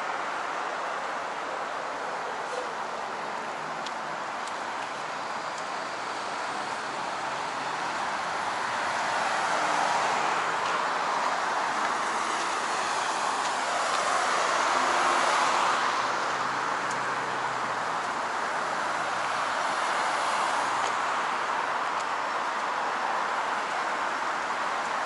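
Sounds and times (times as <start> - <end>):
passing vehicles and tyres: 0.0 - 25.0.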